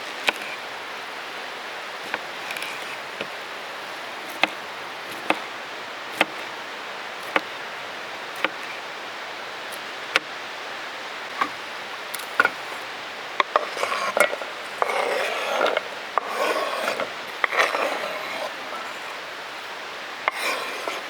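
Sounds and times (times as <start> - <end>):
blade scraping across board: 2.1 - 3.3, 4.2 - 5.5, 7.2 - 7.5, 8.4 - 8.8, 12.2 - 12.8, 13.4 - 21.0.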